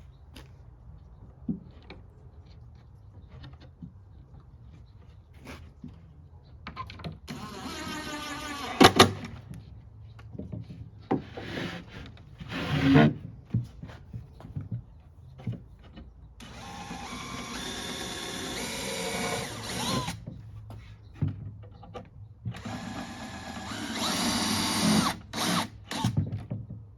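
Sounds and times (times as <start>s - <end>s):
handheld power tool motor: 7.3s - 9.2s, 16.4s - 20.2s, 22.6s - 26.2s.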